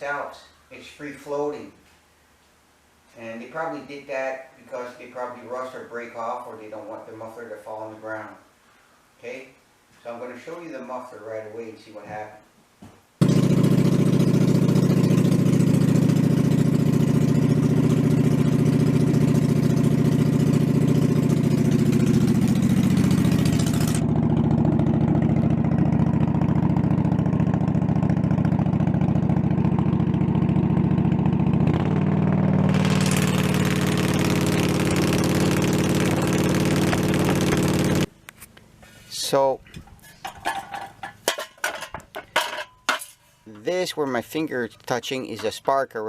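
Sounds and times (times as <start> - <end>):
loud mower engine running: 13.2 - 38.1.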